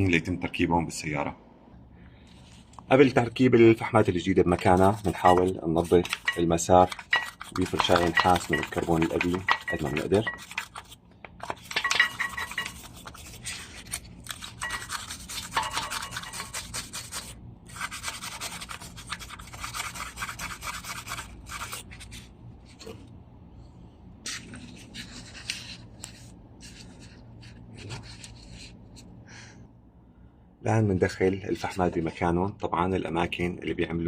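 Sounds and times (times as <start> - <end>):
wire brush scrubbing metal: 4.6 - 11.0, 11.7 - 21.8.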